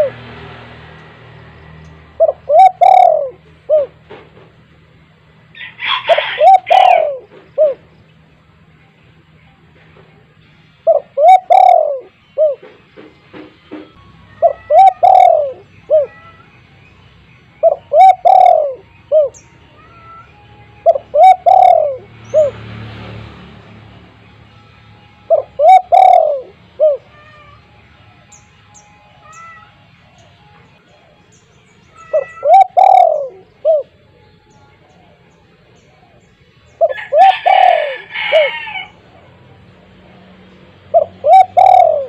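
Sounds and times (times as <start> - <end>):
dove cooing: 0.0 - 0.2, 2.1 - 4.5, 5.6 - 7.9, 10.8 - 12.8, 14.4 - 16.5, 17.6 - 22.6, 25.3 - 27.6, 32.0 - 34.1, 35.8 - 39.3, 40.9 - 42.0.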